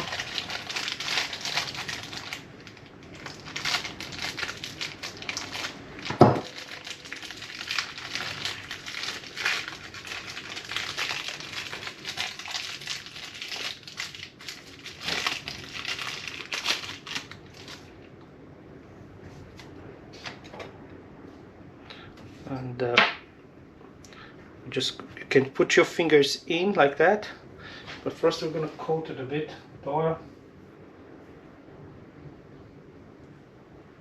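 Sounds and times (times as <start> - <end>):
plastic packaging crinkling: 0.0 - 18.1.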